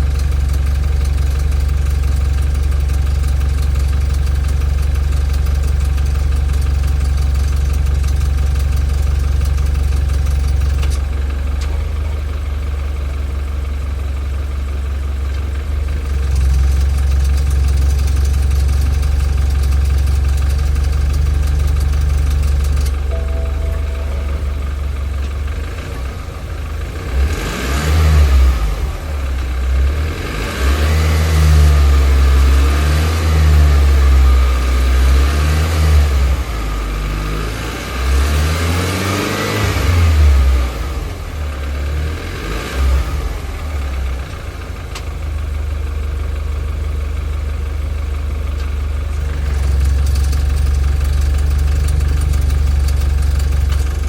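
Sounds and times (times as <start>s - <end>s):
car engine revving and idling: 26.7s - 54.0s.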